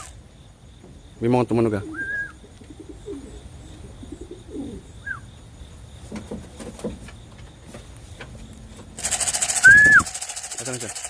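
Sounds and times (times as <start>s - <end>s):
pigeons cooing: 1.6s - 5.3s, 9.0s - 10.1s
short high chirp: 9.6s - 10.1s.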